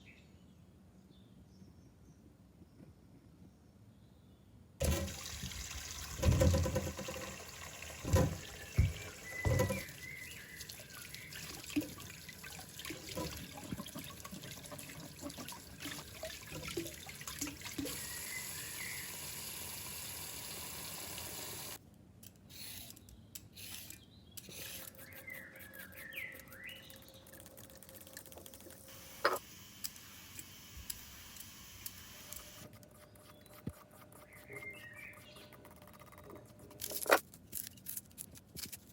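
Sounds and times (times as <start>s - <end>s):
tap water running into sink: 4.8s - 18.1s.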